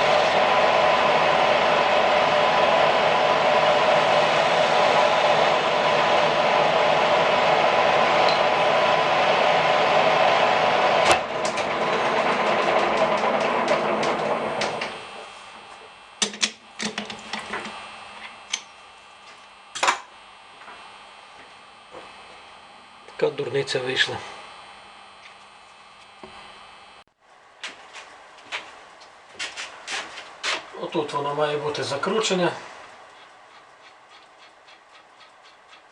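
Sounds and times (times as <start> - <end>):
power tool motor running: 0.0 - 27.0.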